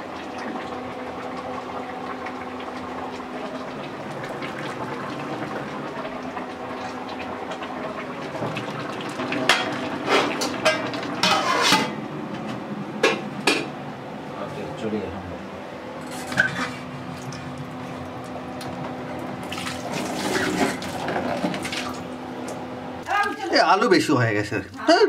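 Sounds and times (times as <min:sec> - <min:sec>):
pot hissing and bubbling: 0:00.0 - 0:11.9, 0:16.0 - 0:22.1
metal utensils and pots clattering: 0:09.4 - 0:12.0, 0:16.0 - 0:16.9, 0:20.0 - 0:21.7.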